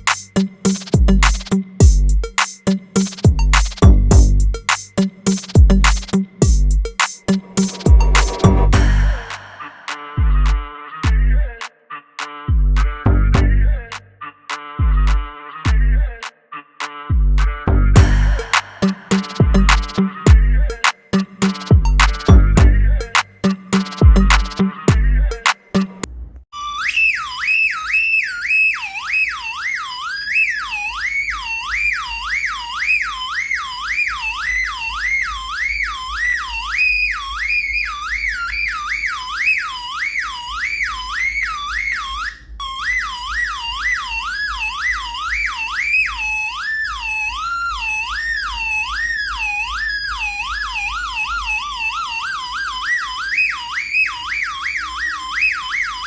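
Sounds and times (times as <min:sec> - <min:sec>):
low hum: 0:05.6 - 0:11.5, 0:17.1 - 0:25.4
warbling electronic siren: 0:07.4 - 0:10.5, 0:18.0 - 0:25.5, 0:26.6 - 0:56.0.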